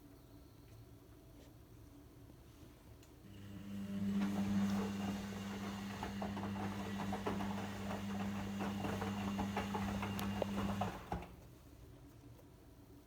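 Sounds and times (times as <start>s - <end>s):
washing machine humming: 3.2s - 11.6s.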